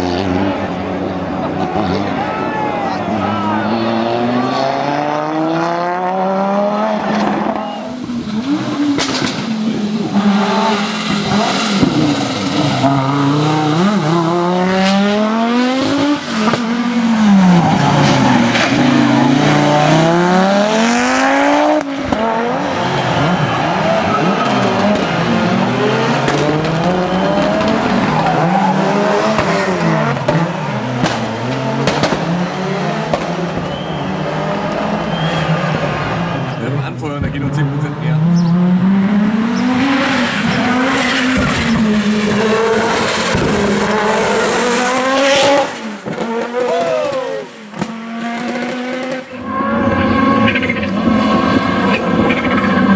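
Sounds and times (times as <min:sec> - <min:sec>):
rally car engine revving hard: 0:00.0 - 0:52.9.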